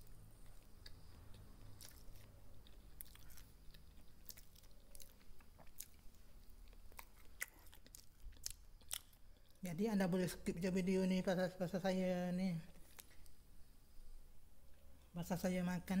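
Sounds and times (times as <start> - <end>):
person chewing crunchy food: 0.3 - 9.6.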